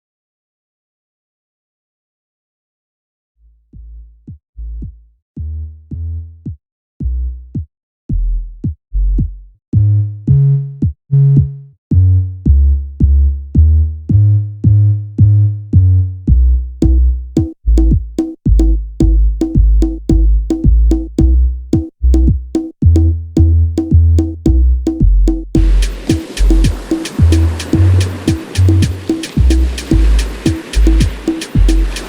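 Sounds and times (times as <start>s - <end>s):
bass-heavy synth notes: 3.7s - 32.0s
clicky drum-machine ticks: 24.9s - 32.0s.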